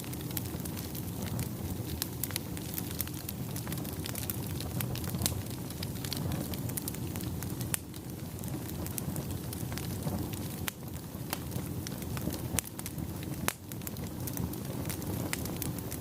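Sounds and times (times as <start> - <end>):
burning wood crackling: 0.0 - 16.0
fire rumbling: 0.0 - 16.0.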